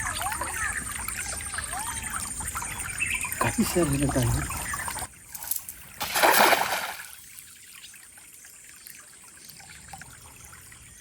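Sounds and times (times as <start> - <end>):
faint trickling water: 0.0 - 11.0
splash in water: 5.4 - 7.2.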